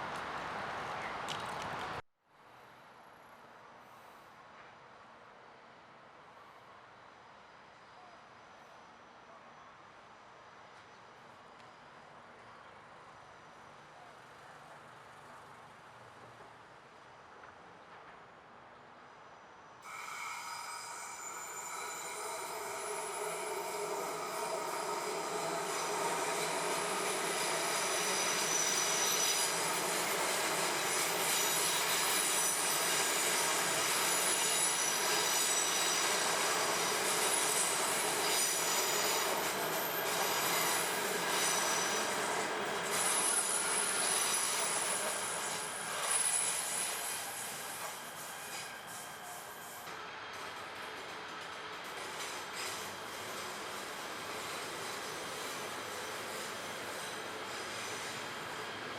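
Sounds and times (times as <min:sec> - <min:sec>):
train brakes squealing: 0:19.4 - 0:58.9
rumble of train wheels: 0:19.8 - 0:58.9.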